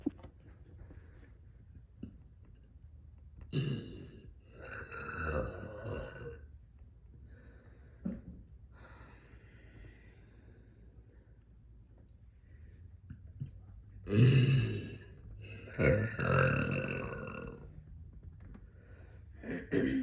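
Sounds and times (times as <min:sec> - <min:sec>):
person burping: 0:03.5 - 0:06.5, 0:14.0 - 0:17.6, 0:19.4 - 0:20.0.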